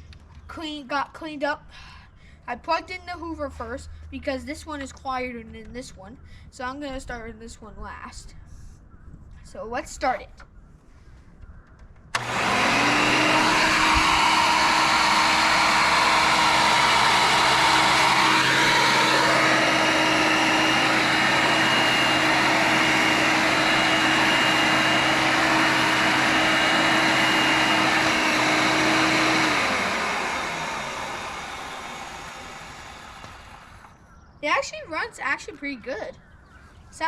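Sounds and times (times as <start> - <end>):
vacuum cleaner running: 12.2 - 33.9
motor whine: 12.2 - 34.0.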